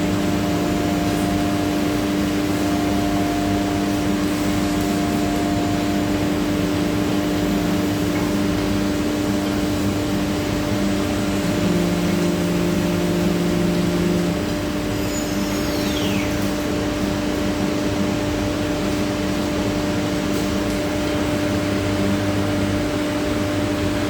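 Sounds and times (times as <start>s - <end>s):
router spindle whine: 0.0s - 17.0s
higher-pitched whine: 0.0s - 18.0s.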